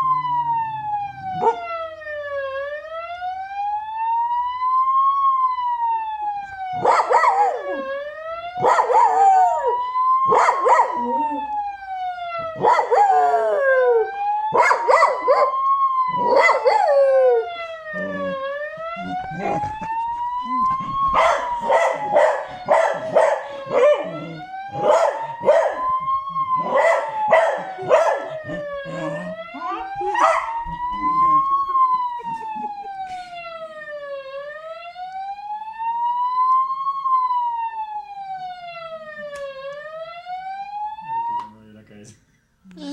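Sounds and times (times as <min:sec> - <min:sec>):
ambulance siren wailing: 0:00.0 - 0:41.9
dog barking: 0:01.4 - 0:01.6, 0:06.8 - 0:07.7, 0:08.6 - 0:09.2, 0:10.3 - 0:11.0, 0:12.6 - 0:13.2, 0:14.5 - 0:15.6, 0:16.2 - 0:16.9, 0:21.1 - 0:25.9, 0:26.6 - 0:29.3, 0:30.1 - 0:30.6.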